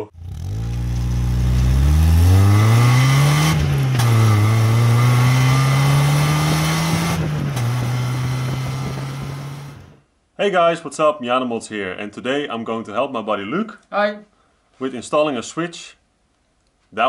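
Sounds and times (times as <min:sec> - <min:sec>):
car engine accelerating: 0:00.0 - 0:10.0.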